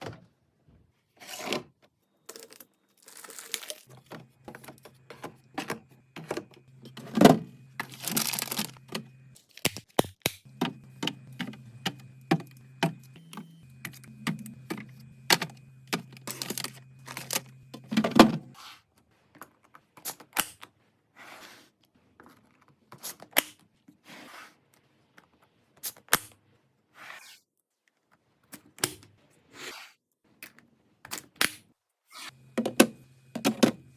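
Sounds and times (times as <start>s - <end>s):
plastic packaging tearing and crinkling: 2.3s - 3.9s, 7.8s - 8.8s
faint low hum: 10.5s - 18.6s.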